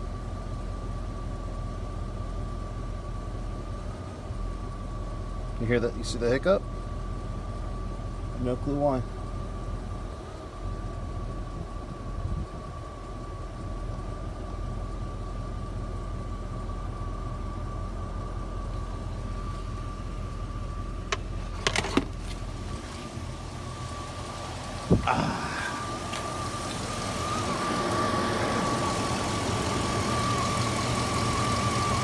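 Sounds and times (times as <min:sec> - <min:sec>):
engine idling roughly: 0:00.0 - 0:32.0
steady high tone: 0:24.6 - 0:30.3.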